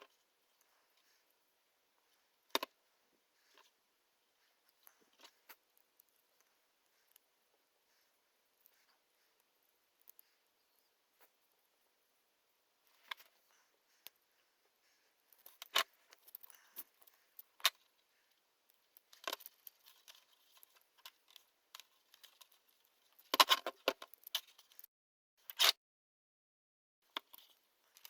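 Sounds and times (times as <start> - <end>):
plastic parts clicking and rustling: 2.4 - 2.8, 15.3 - 25.7, 27.1 - 28.0.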